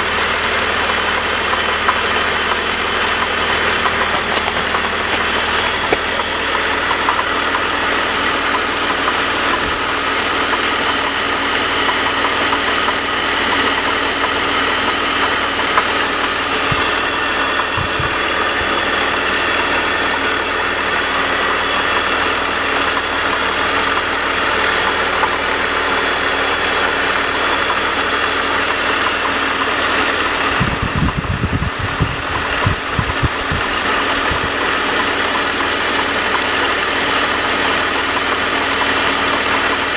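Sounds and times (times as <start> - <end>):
car engine idling with clanking: 0.0 - 39.9.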